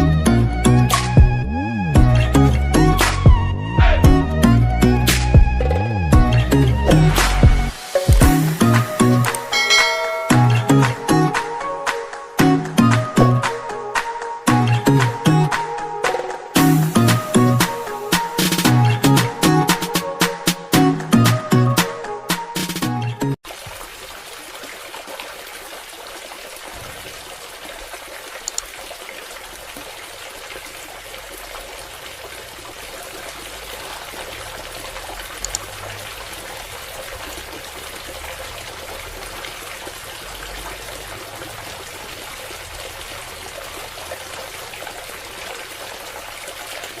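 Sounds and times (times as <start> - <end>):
water trickling and pouring: 5.6 - 11.6, 23.4 - 47.0.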